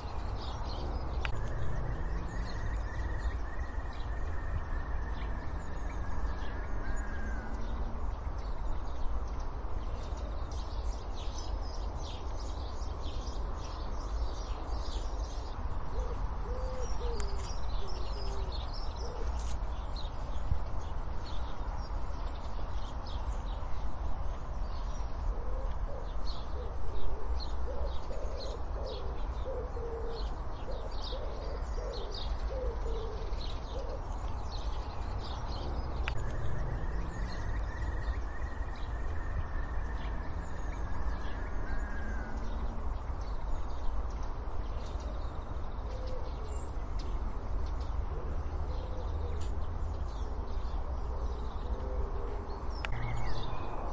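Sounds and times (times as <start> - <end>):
small birds chirping: 0.0 - 53.9
bird cooing: 15.9 - 19.4, 25.3 - 34.3, 45.8 - 46.7, 48.2 - 53.2.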